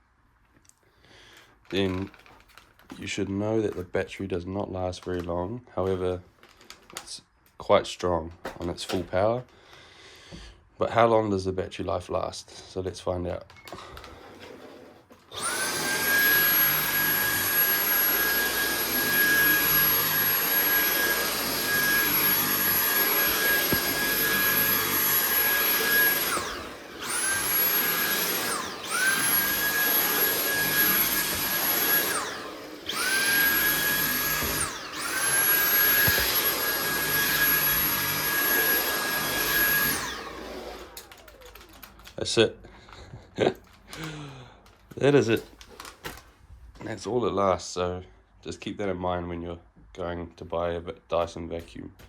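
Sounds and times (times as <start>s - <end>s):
cordless vacuum cleaner motor whine: 13.6s - 42.2s.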